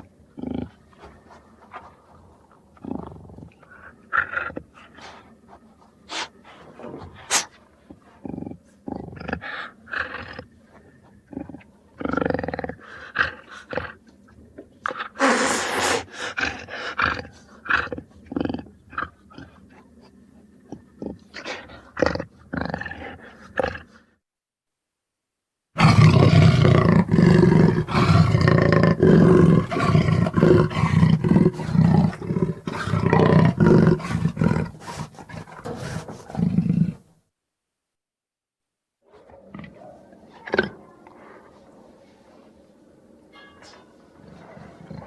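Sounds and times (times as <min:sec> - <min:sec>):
jaguar snarl: 0:06.1 - 0:07.6, 0:25.8 - 0:37.0
jaguar growling and grunting: 0:25.8 - 0:37.0.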